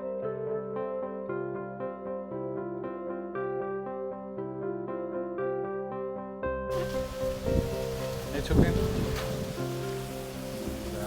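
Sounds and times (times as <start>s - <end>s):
soft keyboard music: 0.0s - 11.0s
strong wind rushing: 6.7s - 11.0s.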